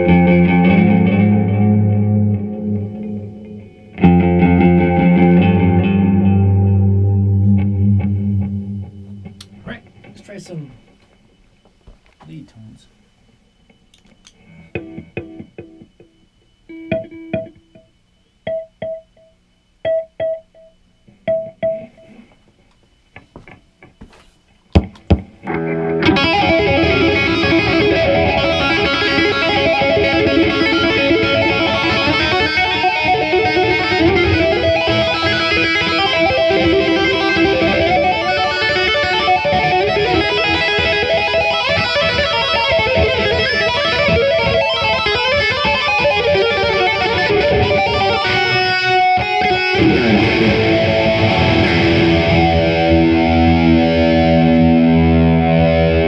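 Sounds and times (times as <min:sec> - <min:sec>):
electric guitar single notes: 0:00.0 - 0:10.3, 0:14.3 - 0:22.3, 0:25.4 - 0:56.0
distorted guitar lead with delay: 0:00.0 - 0:10.8, 0:14.3 - 0:22.4, 0:25.0 - 0:56.0.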